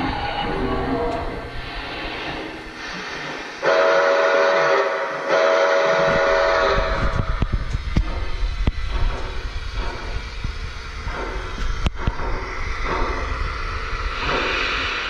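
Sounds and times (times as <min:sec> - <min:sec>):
train rumbling: 0:00.0 - 0:15.0
train horn blasts: 0:03.6 - 0:07.0
train clicks and knocks: 0:05.6 - 0:15.0.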